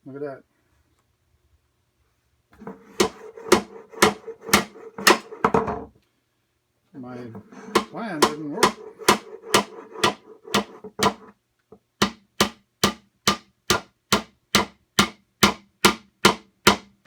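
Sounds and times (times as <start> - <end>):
hammer driving nail into wood: 2.6 - 5.5, 7.6 - 11.3, 12.0 - 16.9.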